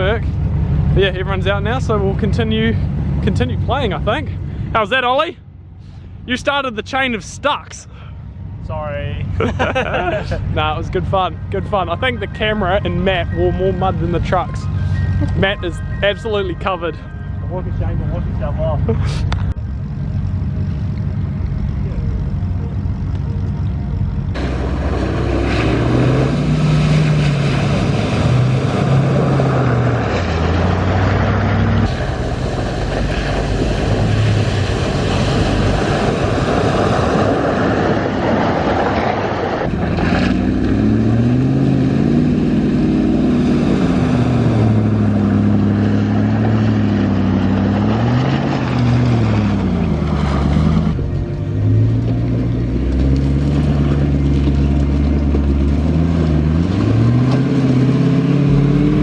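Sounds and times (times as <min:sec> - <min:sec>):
truck engine revving: 0:00.0 - 0:05.3, 0:08.4 - 0:59.0
steady rushing noise: 0:23.2 - 0:41.1.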